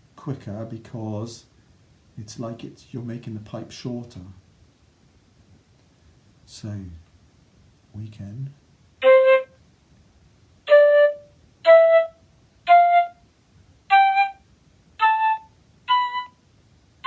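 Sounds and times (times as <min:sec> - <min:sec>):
flute playing rising scale: 0:09.0 - 0:09.6, 0:10.7 - 0:13.2, 0:13.9 - 0:14.4, 0:15.0 - 0:16.4.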